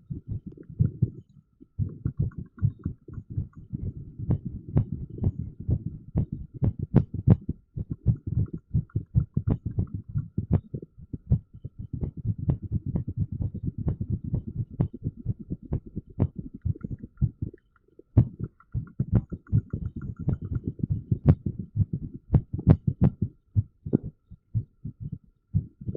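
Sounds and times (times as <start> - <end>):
amplified heartbeat thuds: 0.1 - 1.2, 1.8 - 17.6, 18.2 - 25.9.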